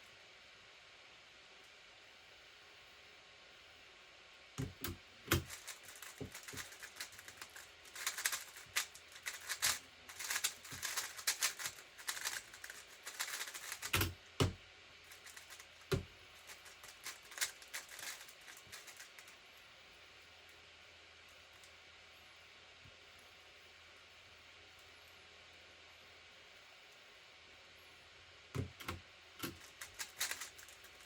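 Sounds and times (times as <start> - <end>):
puzzle cube plastic clicks: 4.6 - 19.3, 28.6 - 31.0.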